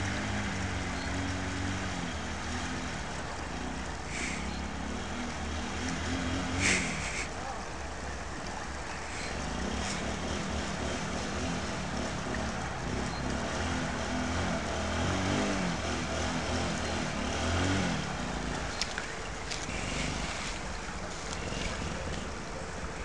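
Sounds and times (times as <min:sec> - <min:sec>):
motorcycle engine revving: 0:00.0 - 0:07.3, 0:09.1 - 0:18.8, 0:19.5 - 0:22.5.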